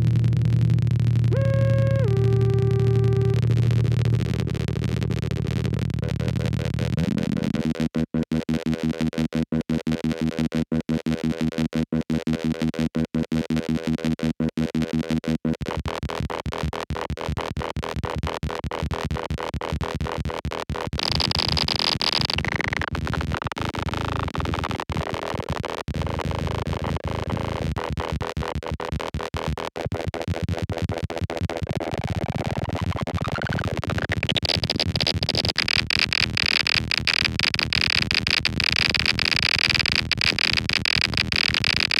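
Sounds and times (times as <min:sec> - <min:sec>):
pulsing synthesizer drone: 0:00.0 - 0:07.6, 0:34.4 - 0:41.9.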